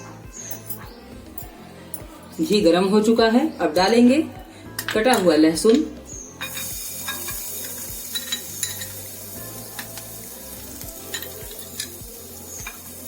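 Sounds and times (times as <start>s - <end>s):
spoon clicking against a pan: 4.8s - 9.0s, 11.1s - 12.0s
garlic sizzling in a pan: 6.2s - 13.0s.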